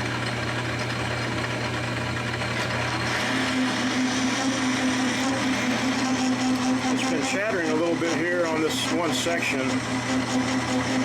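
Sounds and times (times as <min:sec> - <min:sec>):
metal lathe cutting thread: 0:00.0 - 0:11.0
tool chattering high tone: 0:03.4 - 0:11.0.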